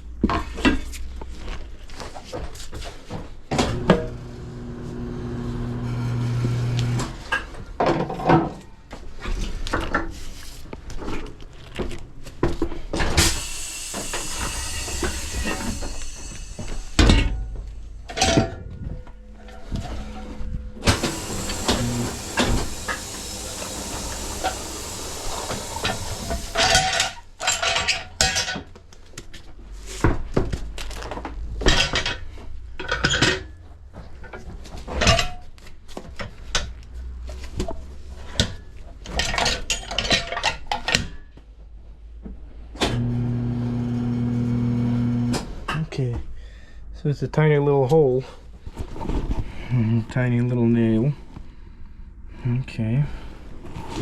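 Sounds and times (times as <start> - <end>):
motor humming: 3.6 - 7.3, 13.3 - 26.6
compressed air hissing: 13.2 - 18.1, 20.8 - 26.8
metal tools clanking: 14.5 - 23.6, 25.8 - 28.7.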